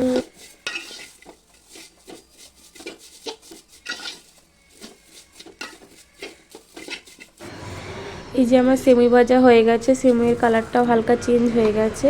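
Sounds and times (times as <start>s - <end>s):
food frying: 0.0s - 8.1s
spoon scraping a pot: 0.0s - 8.2s.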